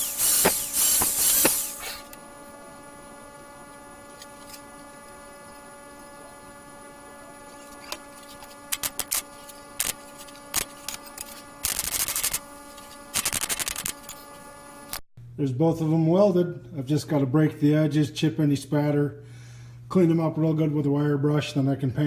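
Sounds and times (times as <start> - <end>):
sharp pops: 0.0 - 2.2
welding arc crackling: 0.0 - 2.4, 7.8 - 14.1
electrical hum: 0.0 - 22.0.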